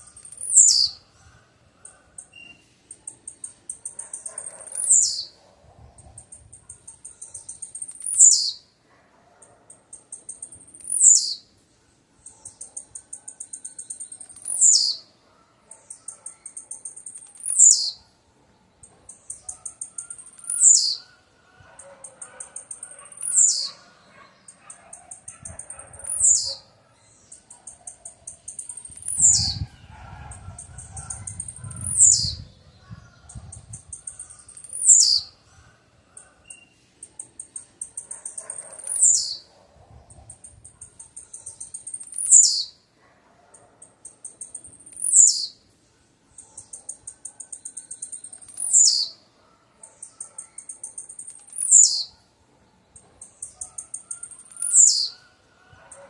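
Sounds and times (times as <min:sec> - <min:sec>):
bird singing short song: 0:00.0 - 0:01.0, 0:02.2 - 0:05.4, 0:06.1 - 0:08.6, 0:10.2 - 0:11.5, 0:12.2 - 0:15.1, 0:15.8 - 0:18.1, 0:18.8 - 0:21.1, 0:22.0 - 0:35.3, 0:38.3 - 0:39.5, 0:40.5 - 0:42.8, 0:44.4 - 0:45.6, 0:47.6 - 0:49.2, 0:50.0 - 0:52.2.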